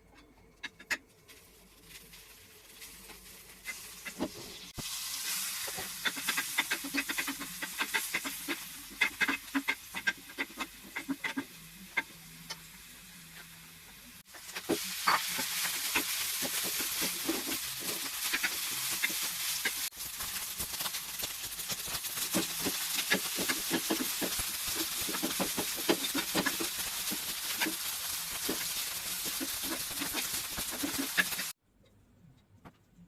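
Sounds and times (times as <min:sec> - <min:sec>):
rice sizzling in a pan: 0:01.3 - 0:31.6
spatula scraping a pan: 0:03.6 - 0:12.2, 0:14.4 - 0:19.9, 0:21.8 - 0:31.6.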